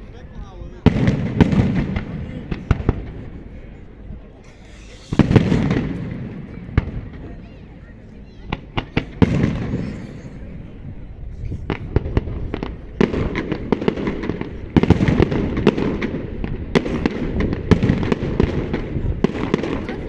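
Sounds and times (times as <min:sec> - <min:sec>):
fireworks bangs and crackles: 0:00.0 - 0:20.0
fireworks booming: 0:00.8 - 0:20.0.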